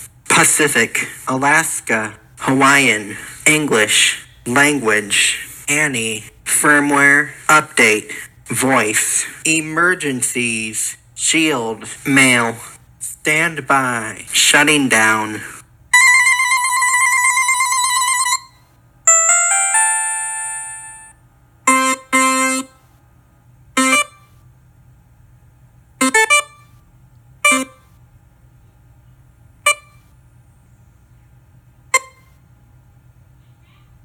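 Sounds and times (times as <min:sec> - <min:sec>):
electronic chime: 0:19.1 - 0:21.1
warbling electronic ring: 0:19.1 - 0:21.1.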